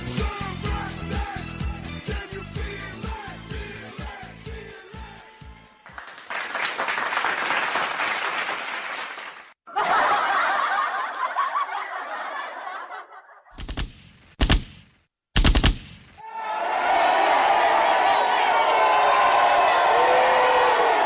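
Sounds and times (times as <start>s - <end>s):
canned audience laughter: 9.7s - 13.5s
sharp bangs: 13.6s - 16.2s.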